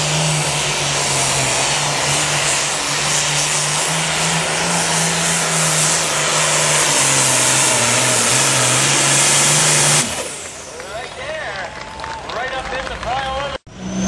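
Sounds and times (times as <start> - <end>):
tractor engine droning: 0.0 - 14.0.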